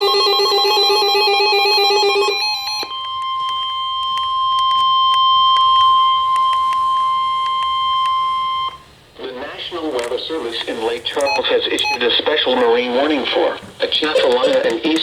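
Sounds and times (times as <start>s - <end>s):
steady warning alarm tone: 0.0s - 15.0s
static crackles: 2.9s - 15.0s
alternating electronic beeps: 11.2s - 13.5s.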